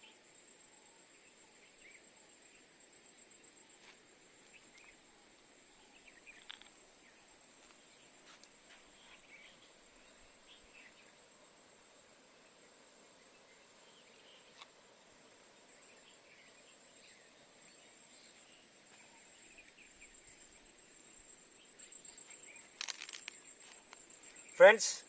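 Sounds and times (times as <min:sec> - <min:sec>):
handling clicks and rustles: 0:22.2 - 0:24.2.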